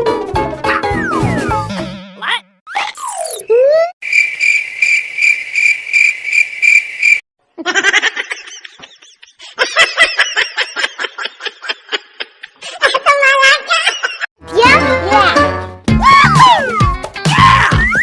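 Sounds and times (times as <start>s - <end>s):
high squeaky chirps: 2.7s - 7.2s
cricket-like pulsing chirp: 4.0s - 7.2s.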